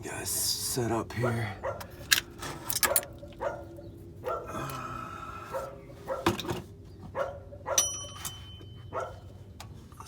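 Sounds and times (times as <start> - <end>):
dog barking: 1.6 - 1.9, 2.9 - 4.5, 5.5 - 6.3, 7.1 - 7.9, 8.9 - 9.3.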